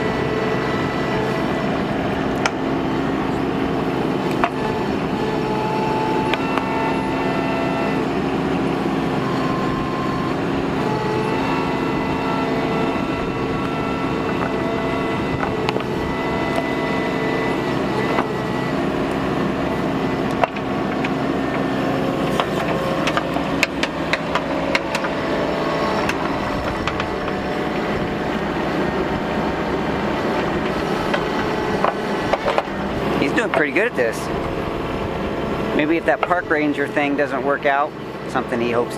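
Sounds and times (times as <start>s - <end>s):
excavator diesel engine: 0.0s - 38.9s
hydraulic whine: 0.0s - 38.9s.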